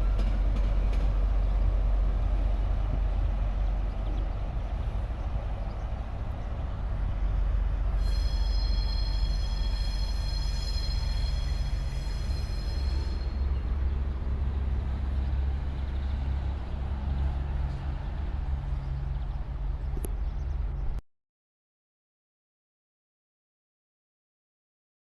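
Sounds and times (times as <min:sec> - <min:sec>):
train rumbling past: 0:00.0 - 0:21.0
wheels squealing on rails: 0:07.2 - 0:16.3.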